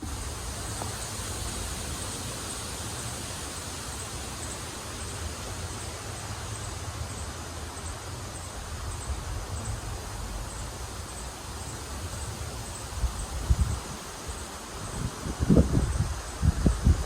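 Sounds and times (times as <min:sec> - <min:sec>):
steady rain falling: 0:00.0 - 0:17.0
wind rumble on microphone: 0:08.6 - 0:17.0.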